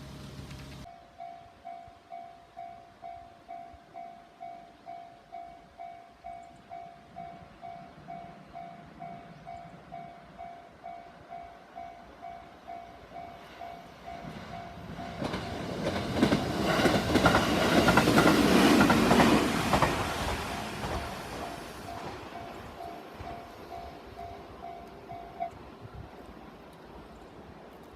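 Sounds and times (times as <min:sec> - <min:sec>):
electric train passing: 0:00.0 - 0:27.9
train wheel clicks: 0:15.1 - 0:25.7
level crossing warning bell: 0:21.9 - 0:25.6.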